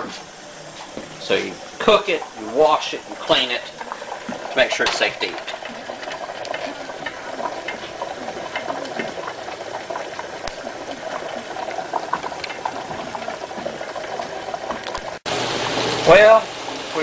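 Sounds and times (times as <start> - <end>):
vegetables and bacon sizzling: 0.0 - 17.0.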